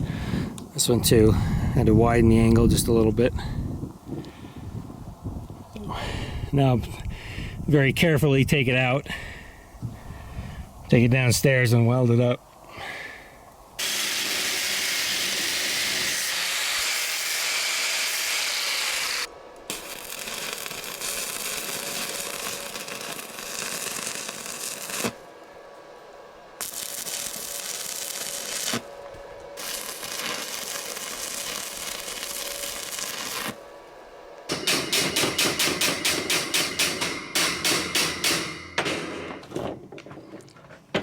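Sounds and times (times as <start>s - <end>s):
welding: 13.8s - 25.3s, 26.6s - 28.9s, 29.6s - 33.6s, 34.5s - 39.4s
sharp metal taps: 34.5s - 39.5s.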